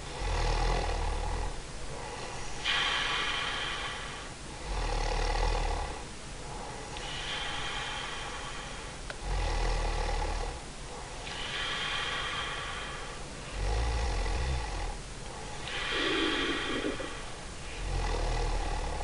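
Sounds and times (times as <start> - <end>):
long hissing breath: 0.0 - 19.0
woman snoring: 0.1 - 1.6, 4.6 - 6.0, 9.2 - 10.6, 11.3 - 15.0, 15.7 - 17.2, 17.8 - 19.0.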